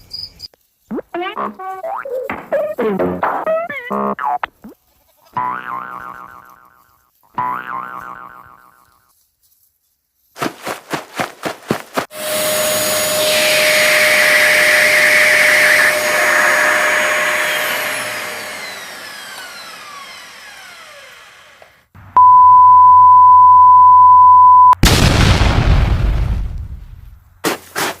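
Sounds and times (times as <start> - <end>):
cartoon boings: 0.9 - 4.8
whooshing rush with falling whistle: 12.1 - 20.1
steady beep tone: 22.2 - 24.8
explosion crash: 24.8 - 27.2.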